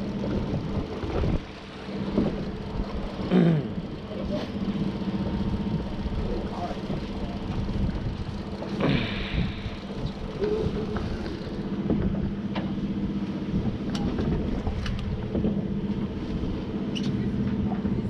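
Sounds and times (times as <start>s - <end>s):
wind on microphone: 0.0s - 3.2s, 5.6s - 12.4s, 13.1s - 16.6s
boat engine humming: 0.0s - 18.0s.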